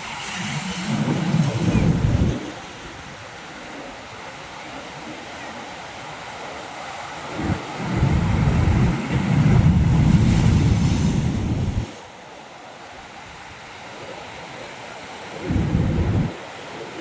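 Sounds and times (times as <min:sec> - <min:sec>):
wind buffeting microphone: 0:00.0 - 0:03.2, 0:07.2 - 0:12.0, 0:15.3 - 0:17.0
surf washing on rocky beach: 0:00.0 - 0:17.0.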